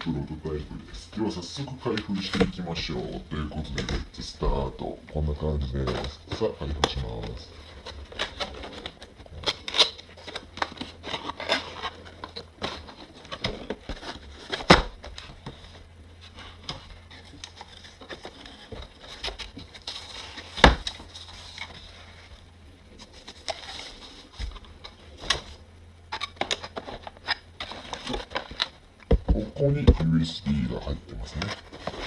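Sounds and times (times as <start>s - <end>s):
packaging rustling and scraping: 5.5s - 28.8s, 31.2s - 32.0s.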